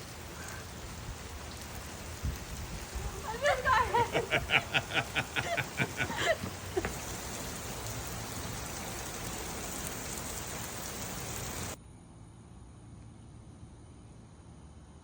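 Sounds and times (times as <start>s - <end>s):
water falling hiss: 0.0s - 11.8s.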